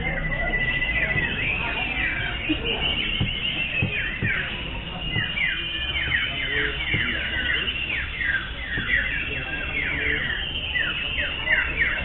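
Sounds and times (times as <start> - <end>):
birds whistling and chirping: 0.0 - 12.0
low murmur of people: 0.0 - 12.0.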